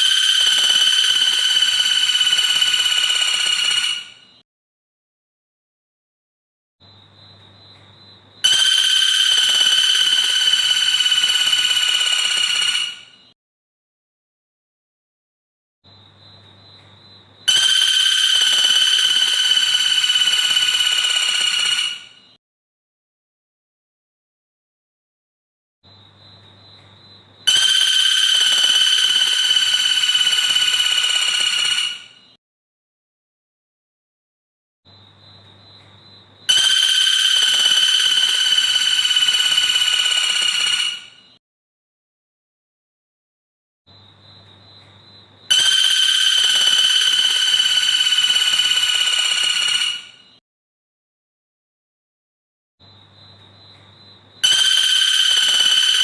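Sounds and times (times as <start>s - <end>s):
bird buzzy trill: 0.0s - 4.4s, 8.4s - 13.2s, 17.5s - 22.3s, 27.5s - 32.2s, 36.5s - 41.3s, 45.5s - 50.4s, 54.4s - 56.0s.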